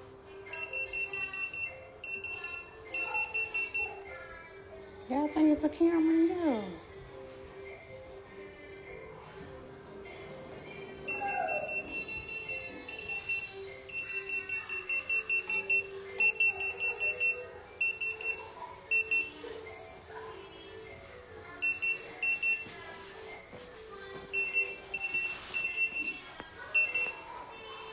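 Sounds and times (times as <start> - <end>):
fast high-pitched beeps: 11.1 - 19.3.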